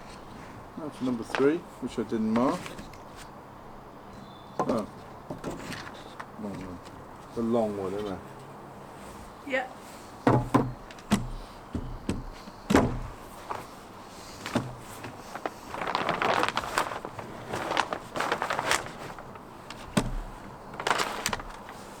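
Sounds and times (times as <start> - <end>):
scraping and rustling: 0.0 - 3.4, 4.6 - 22.0
timber panels knocking: 4.6 - 7.0, 10.2 - 13.7, 14.5 - 21.8.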